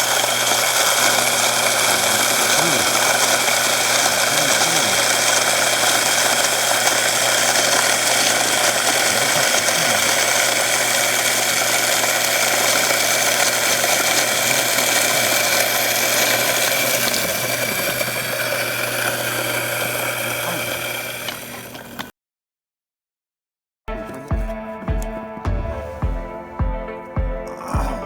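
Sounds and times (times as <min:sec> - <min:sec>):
hand coffee mill grinding: 0:00.0 - 0:22.1.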